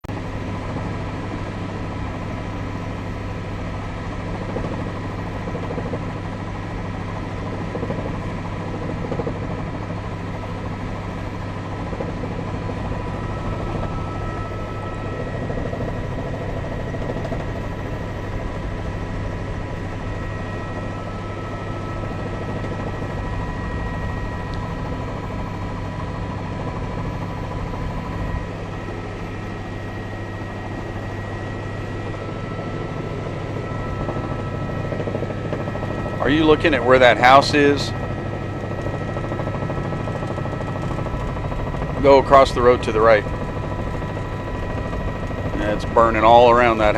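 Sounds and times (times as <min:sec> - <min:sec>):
helicopter engine and rotor drone: 0:00.0 - 0:46.9
low hum: 0:07.2 - 0:42.0.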